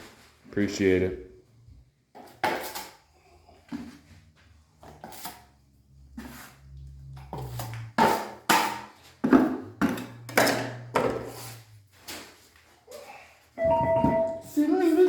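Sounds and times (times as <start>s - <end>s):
metal knife scraping mud pan: 4.8s - 5.6s, 6.2s - 9.0s.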